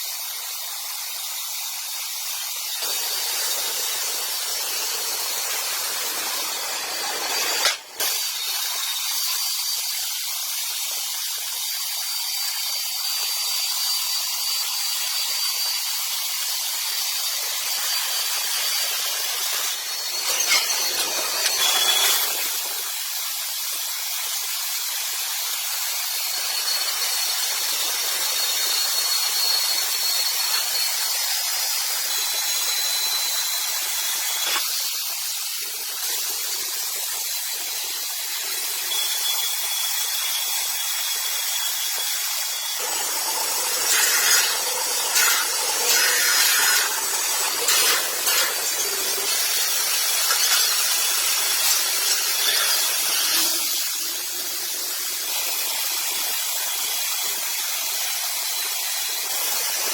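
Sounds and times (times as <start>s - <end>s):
wood processing machine hissing: 0.0s - 59.9s
thin squealing tones: 19.7s - 22.8s, 43.8s - 54.0s.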